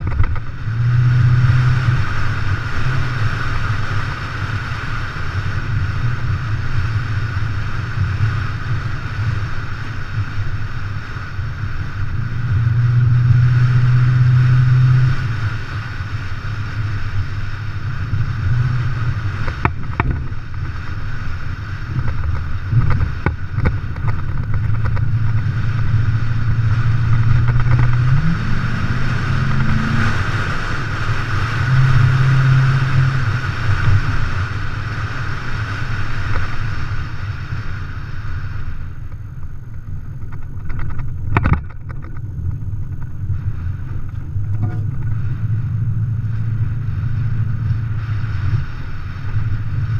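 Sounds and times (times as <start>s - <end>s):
vehicle engine running: 0.0s - 49.9s
sharp knocks and rattles: 19.4s - 20.7s, 39.7s - 43.2s.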